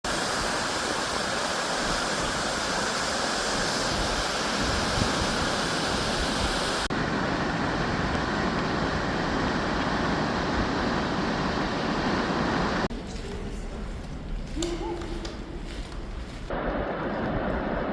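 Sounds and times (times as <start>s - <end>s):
heavy falling water rushing: 0.0s - 7.2s.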